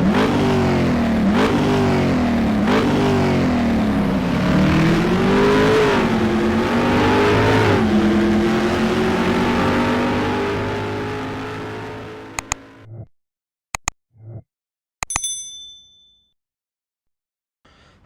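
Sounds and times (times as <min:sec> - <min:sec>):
car engine accelerating hard: 0:00.0 - 0:12.8.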